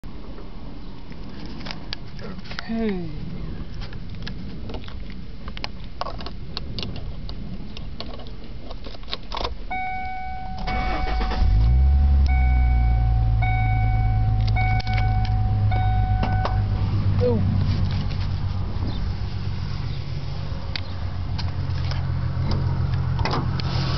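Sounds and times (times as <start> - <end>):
car engine cranking and idling: 3.6 - 23.9
car warning chime: 9.7 - 16.8.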